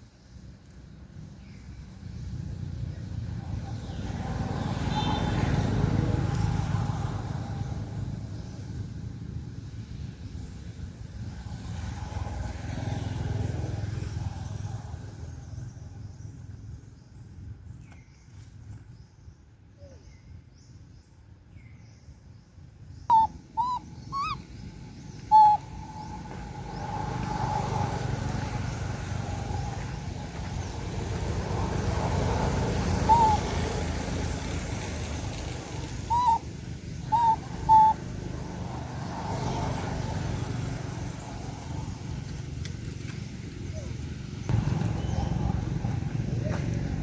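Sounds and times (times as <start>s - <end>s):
high-pitched animal squeaks: 23.1s - 24.4s, 25.3s - 25.7s, 33.1s - 33.5s, 36.1s - 36.5s, 37.1s - 38.0s.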